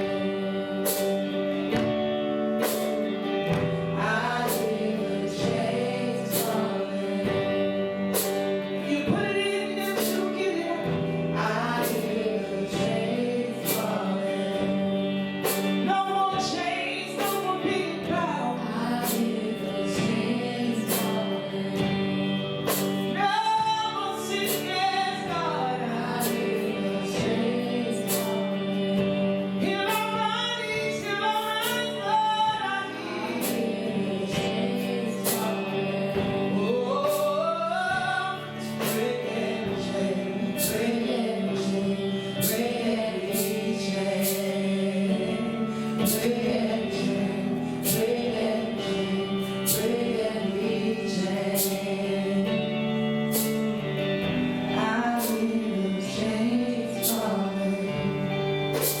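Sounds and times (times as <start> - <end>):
steady drum beat: 0.0 - 56.2
voices singing gospel: 0.0 - 59.0.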